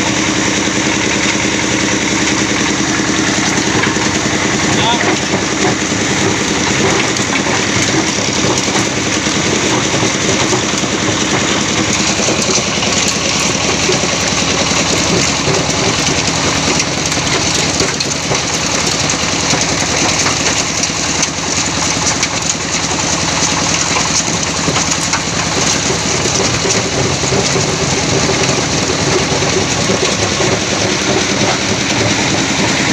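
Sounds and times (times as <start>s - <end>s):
sorting machine drone and rattle: 0.0s - 32.9s.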